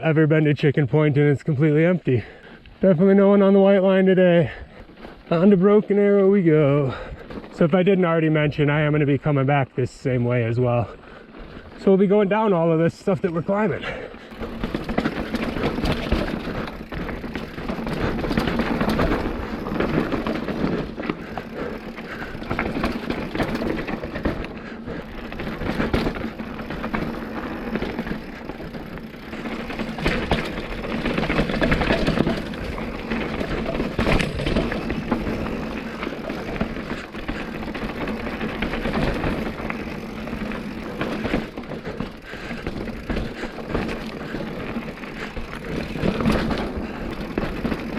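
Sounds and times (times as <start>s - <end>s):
bike tyres on rock and gravel: 0.0s - 47.9s
bike knocking and rattling: 4.4s - 8.9s, 12.4s - 47.9s.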